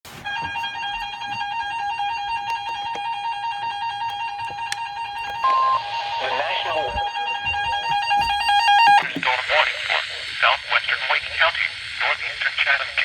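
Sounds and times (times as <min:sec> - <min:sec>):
two-tone alert signal: 0:05.2 - 0:09.1
high beep: 0:05.4 - 0:07.0.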